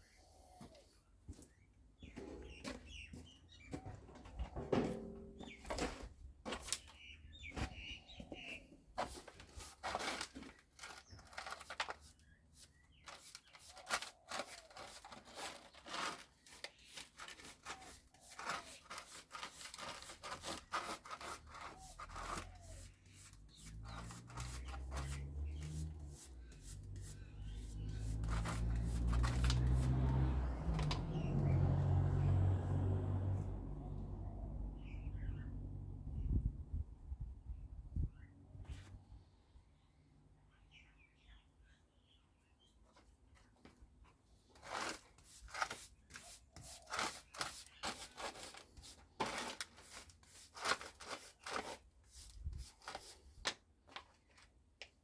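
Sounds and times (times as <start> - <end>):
scraping and clicking on metal scrap: 13.1 - 26.0, 27.8 - 29.9, 44.6 - 51.8.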